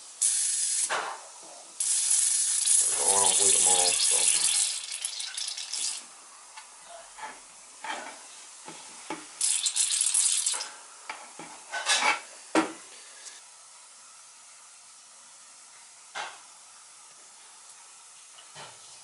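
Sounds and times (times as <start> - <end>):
radiator bleed valve sputtering hiss: 0.0 - 6.8, 8.3 - 11.6.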